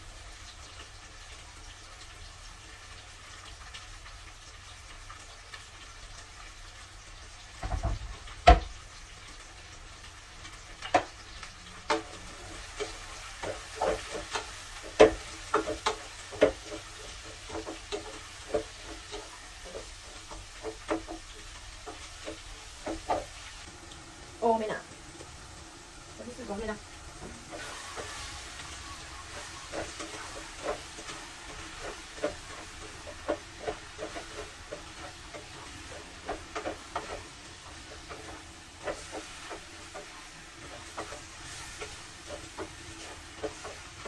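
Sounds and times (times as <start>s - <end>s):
vegetables sizzling in a pan: 0.0s - 44.0s
utensil knocking and scraping a pan: 7.6s - 9.4s, 10.5s - 23.7s, 26.3s - 44.0s.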